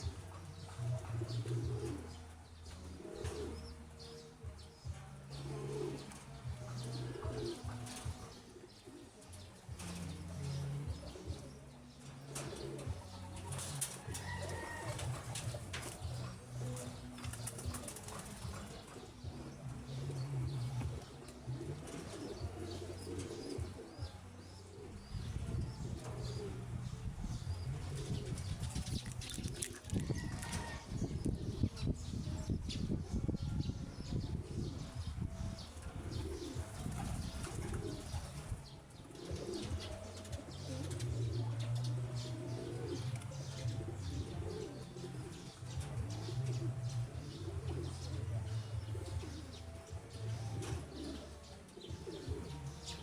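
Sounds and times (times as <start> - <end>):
pigeons cooing: 0.0 - 53.0
wings flapping: 28.6 - 30.8.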